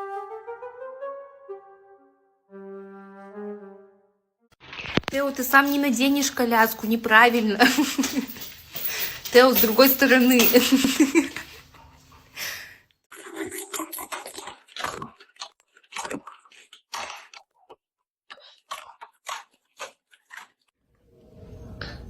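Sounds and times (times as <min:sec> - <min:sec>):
dog chewing crunchy food: 0:04.6 - 0:05.9, 0:13.1 - 0:20.7.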